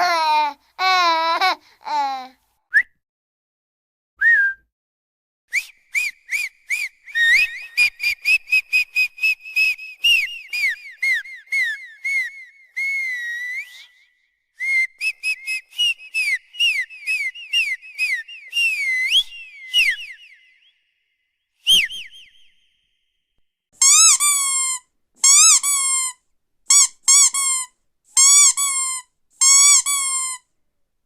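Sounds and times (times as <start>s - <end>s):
high-pitched whistling chirps: 5.6s - 24.6s.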